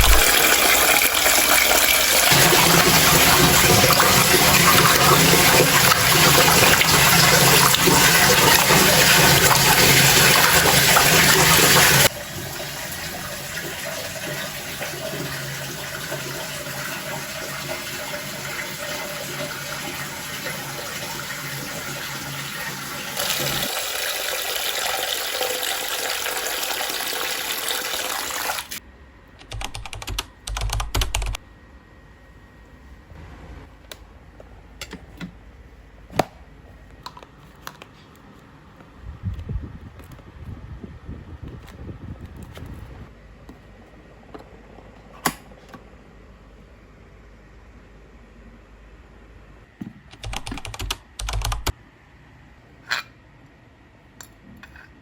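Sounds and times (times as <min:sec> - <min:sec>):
water running and splashing: 0:00.0 - 0:14.6.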